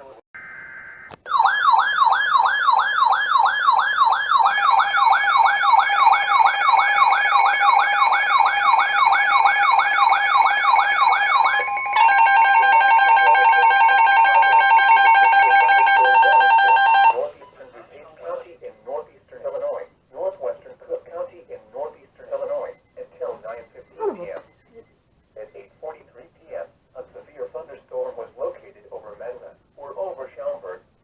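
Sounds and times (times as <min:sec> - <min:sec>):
warbling siren tone: 0:00.4 - 0:17.4
steady alert tone: 0:07.6 - 0:19.9.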